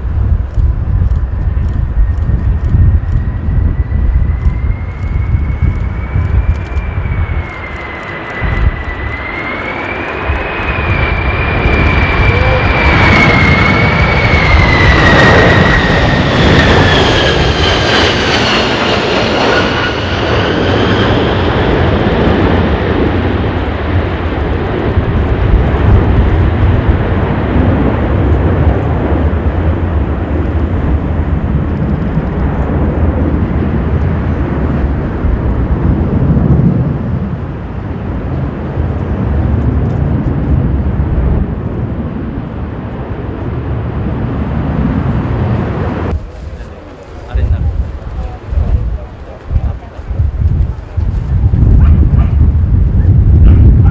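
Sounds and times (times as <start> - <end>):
jet engines whining: 0.0 - 53.9
wind on microphone: 0.0 - 53.9.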